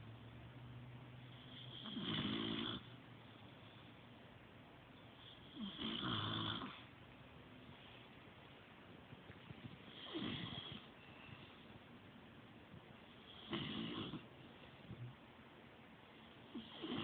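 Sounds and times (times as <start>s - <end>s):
pet snoring: 1.3s - 2.9s, 5.2s - 6.9s, 9.8s - 10.9s, 13.2s - 14.3s, 16.4s - 17.0s.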